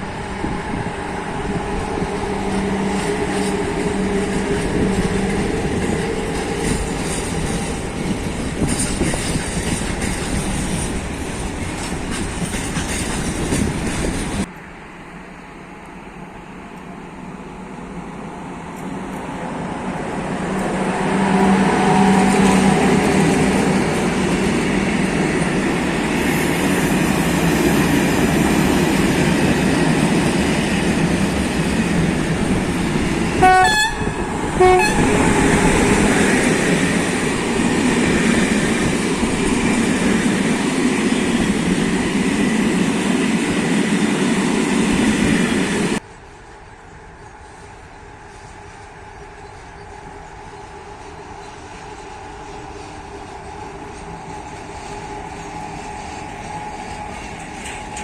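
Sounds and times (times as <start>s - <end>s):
train rumbling and rattling: 0.0s - 58.0s
train horn blasts: 33.3s - 35.8s.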